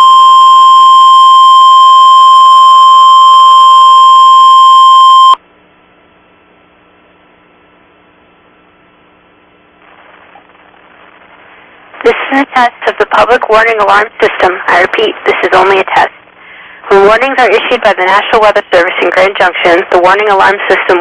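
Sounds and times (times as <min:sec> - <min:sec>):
steady alarm beep: 0:00.0 - 0:05.4
faint radio hiss: 0:05.9 - 0:21.0.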